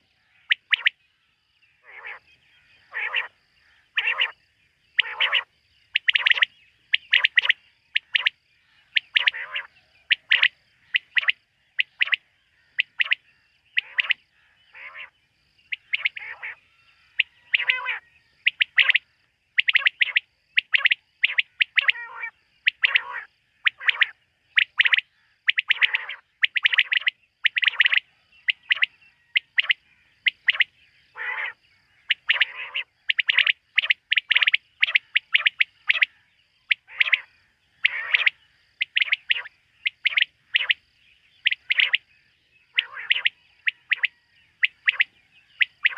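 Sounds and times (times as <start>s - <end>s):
quail calling: 1.8s - 2.3s, 2.9s - 4.4s, 5.0s - 12.2s, 12.8s - 13.2s, 13.8s - 15.1s, 15.7s - 19.0s, 19.6s - 40.8s, 41.4s - 42.0s, 42.7s - 45.9s.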